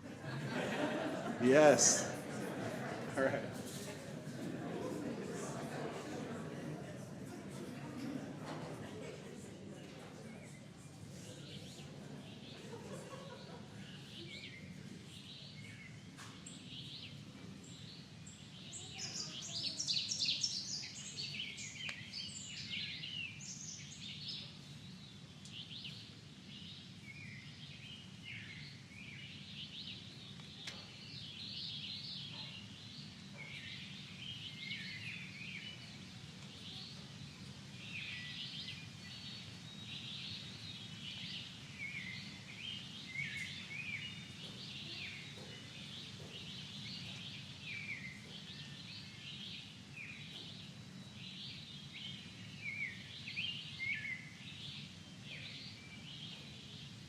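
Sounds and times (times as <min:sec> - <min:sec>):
low background hum: 0:00.0 - 0:57.0
birds chirping and trilling: 0:16.6 - 0:57.0.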